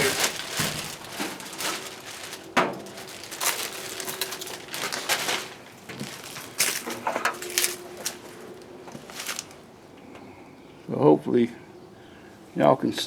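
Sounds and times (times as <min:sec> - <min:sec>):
metal panel rustling: 0:00.0 - 0:10.3.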